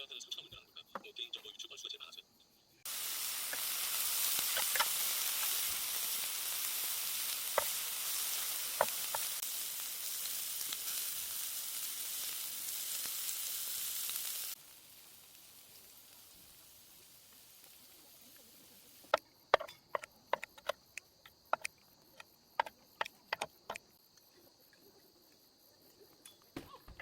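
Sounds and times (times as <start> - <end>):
food sizzling in frying pan: 2.8 - 19.2.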